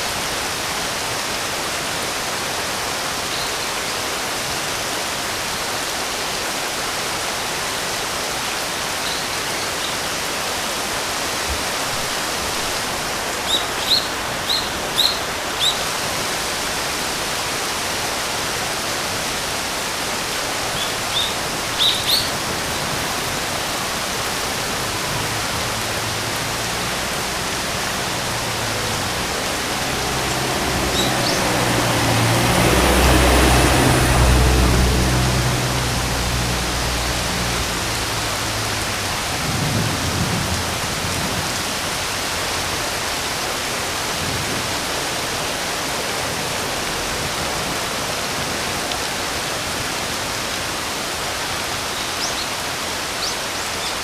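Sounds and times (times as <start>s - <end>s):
rain hiss: 0.0s - 54.0s
high bird chirps: 13.5s - 15.8s, 20.8s - 22.3s.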